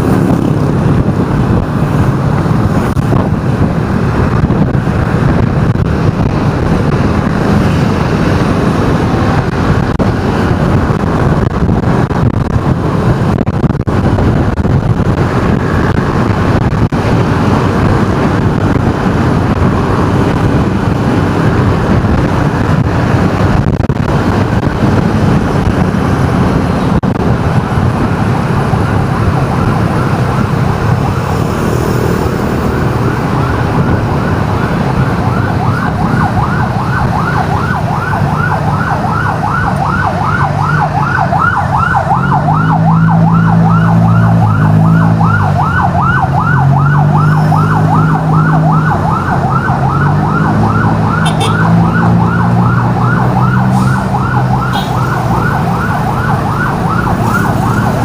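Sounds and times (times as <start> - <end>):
heavy vehicle engine hum: 0.0 - 58.0
road traffic noise: 0.0 - 58.0
emergency siren yelping: 18.0 - 58.0.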